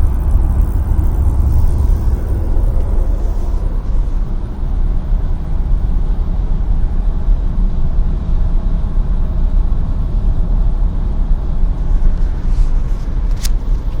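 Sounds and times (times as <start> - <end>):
road noise: 0.0 - 7.2
car engine rumble: 0.0 - 14.0.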